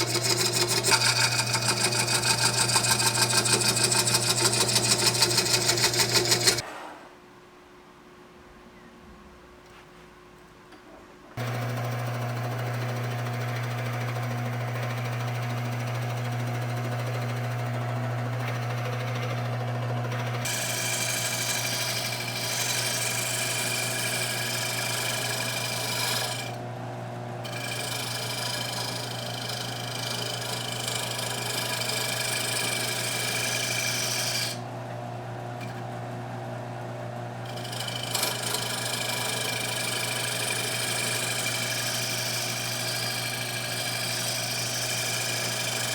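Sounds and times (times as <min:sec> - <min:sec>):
spinning wood scraping: 0:00.0 - 0:06.6, 0:16.5 - 0:26.6, 0:27.4 - 0:34.6, 0:37.4 - 0:45.9
wood lathe motor hum: 0:00.0 - 0:06.6, 0:11.4 - 0:45.9.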